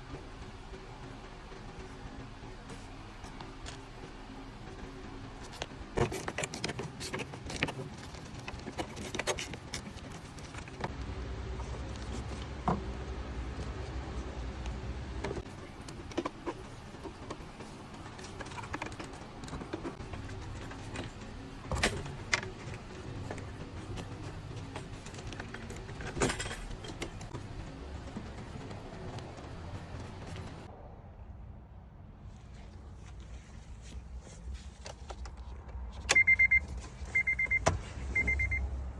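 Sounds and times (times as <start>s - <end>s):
steady low hum: 0.0s - 38.9s
tools and metal parts clinking: 25.1s - 27.3s.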